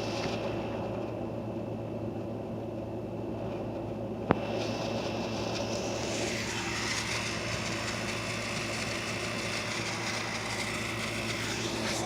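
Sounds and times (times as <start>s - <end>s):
background hum and hiss: 0.0s - 12.0s.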